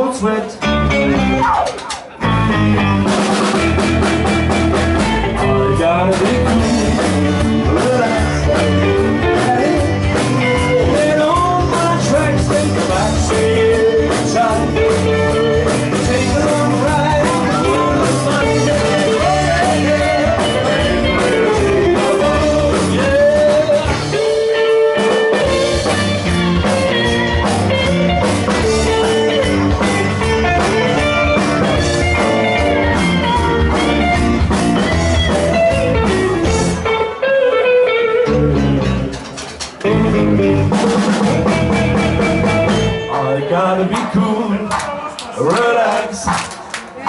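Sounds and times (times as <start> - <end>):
bass and drum kit: 0.0 - 45.0
electric guitar lead lines: 0.6 - 43.5.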